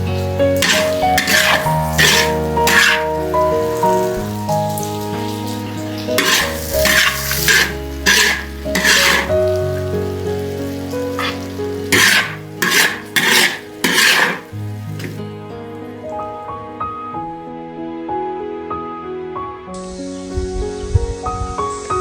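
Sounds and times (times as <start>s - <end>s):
food sizzling in a pan: 0.0s - 15.2s
background music: 0.0s - 22.0s.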